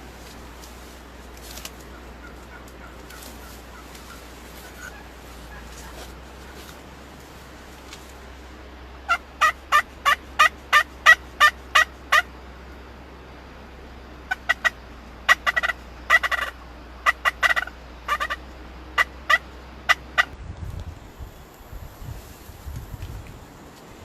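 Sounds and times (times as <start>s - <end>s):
turkey yelping: 1.8s - 6.7s, 9.0s - 12.3s, 14.2s - 20.3s.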